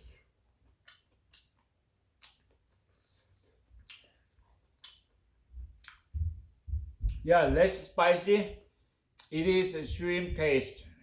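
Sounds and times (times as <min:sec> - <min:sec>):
person chewing with wet clicks: 0:00.6 - 0:06.2
low thumps: 0:05.6 - 0:07.9, 0:09.8 - 0:10.8.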